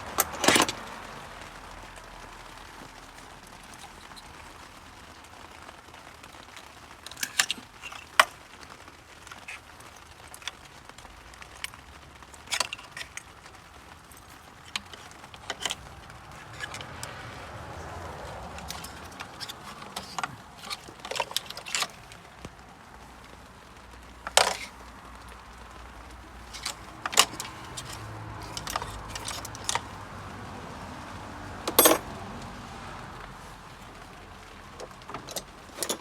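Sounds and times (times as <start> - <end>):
tools clinking on metal: 18.6 - 22.0, 24.2 - 24.7, 26.4 - 29.9, 31.7 - 32.1, 34.7 - 36.0.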